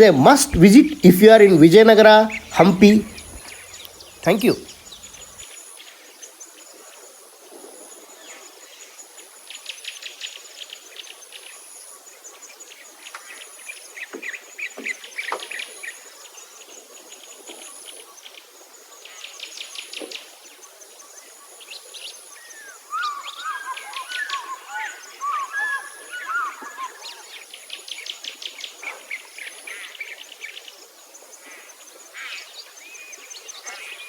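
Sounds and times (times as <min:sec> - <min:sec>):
low gliding bird calls: 0:00.0 - 0:05.2, 0:22.9 - 0:27.3
wetland birds chirping: 0:00.0 - 0:05.4, 0:22.9 - 0:27.3.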